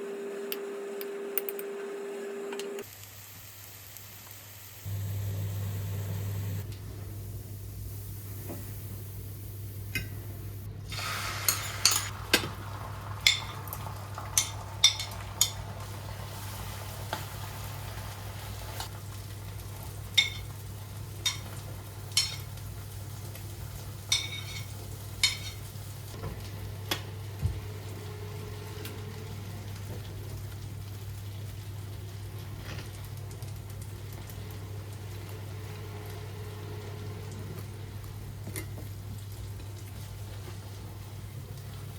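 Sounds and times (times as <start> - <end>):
food sizzling: 0.0 - 41.9
steady low hum: 4.9 - 10.9.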